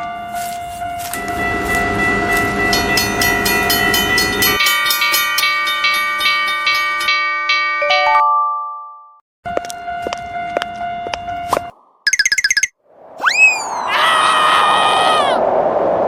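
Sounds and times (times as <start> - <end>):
train horn chord: 0.0 - 2.9
rumble of passing train: 0.0 - 7.0, 14.5 - 16.0
held tones: 12.1 - 12.7.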